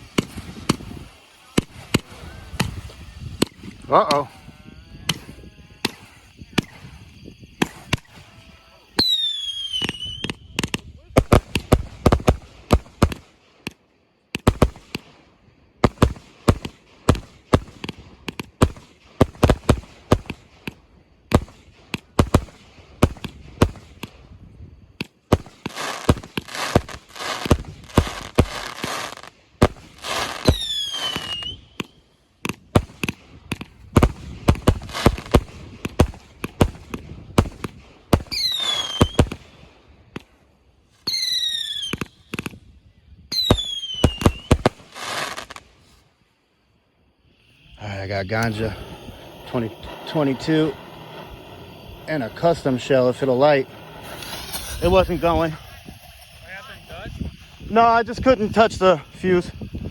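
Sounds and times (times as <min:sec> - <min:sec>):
fireworks bangs: 0:00.0 - 0:46.0, 0:47.6 - 0:59.9
fireworks crackling: 0:00.0 - 0:59.9
firework whistle falling in pitch: 0:02.2 - 0:10.6, 0:30.1 - 0:32.1, 0:38.3 - 0:39.4, 0:43.3 - 0:44.7.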